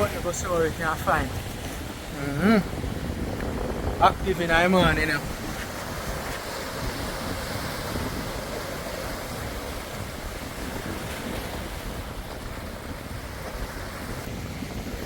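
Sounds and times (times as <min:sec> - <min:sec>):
rough sea washing: 0:00.0 - 0:15.0
wind on microphone: 0:00.0 - 0:15.0.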